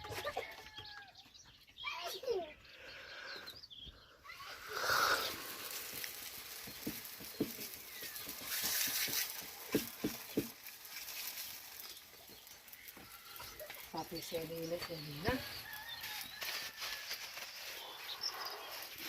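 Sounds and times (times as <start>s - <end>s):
hands patting dough: 5.3s - 16.1s.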